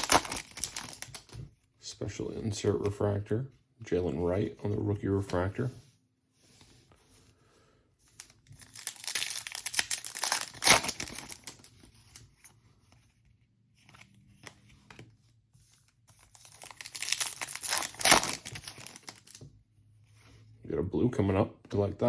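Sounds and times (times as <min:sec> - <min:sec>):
foil wrapper tearing and crinkling: 0:00.0 - 0:01.2, 0:08.6 - 0:11.6, 0:16.3 - 0:19.4.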